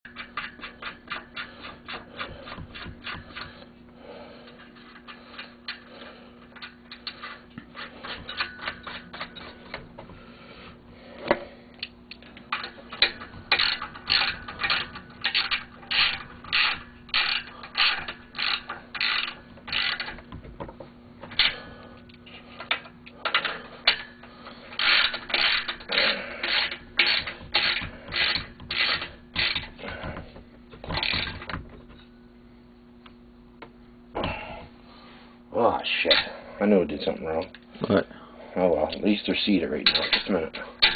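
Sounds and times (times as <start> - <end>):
faint steady hum: 0.1 - 40.9
ratchet wrench clicking: 12.2 - 20.3, 24.7 - 29.7.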